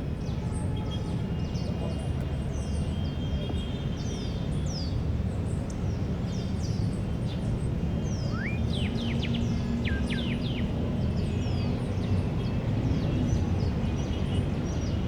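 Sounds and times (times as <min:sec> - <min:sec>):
distant city rumble: 0:00.0 - 0:15.0
small birds chirping: 0:05.6 - 0:15.0.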